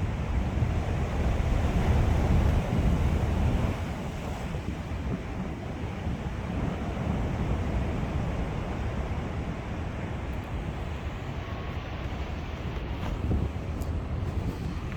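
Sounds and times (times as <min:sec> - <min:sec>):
small waves washing on shore: 0:00.0 - 0:14.9
wind buffeting microphone: 0:00.0 - 0:14.9.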